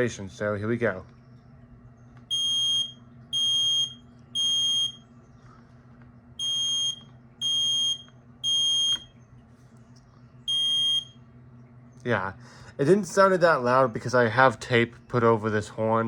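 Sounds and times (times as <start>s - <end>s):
smoke alarm beeping: 2.3s - 5.0s, 6.4s - 9.1s, 10.5s - 11.2s.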